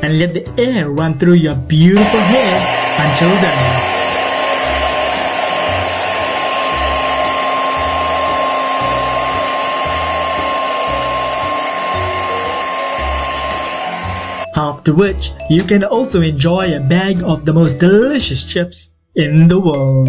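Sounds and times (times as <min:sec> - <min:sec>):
hair dryer blowing: 0:02.0 - 0:14.5.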